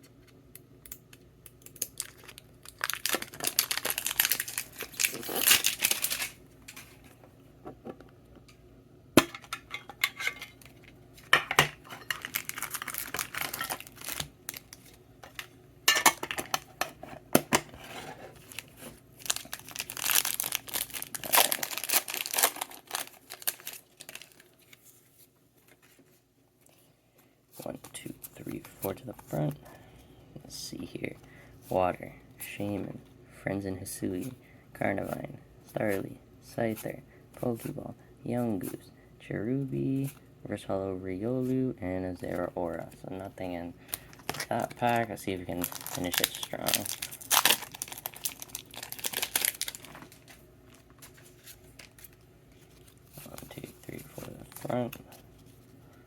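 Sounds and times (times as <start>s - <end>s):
foil wrappers crinkling and tearing: 1.6s - 7.0s, 11.8s - 15.5s, 18.3s - 26.0s, 43.3s - 55.8s.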